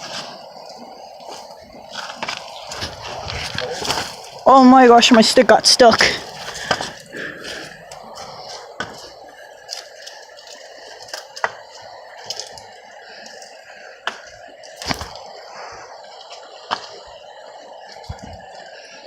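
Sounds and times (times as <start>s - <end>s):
creek water running: 0.0s - 19.0s
footsteps on muddy rocky ground: 1.2s - 10.2s.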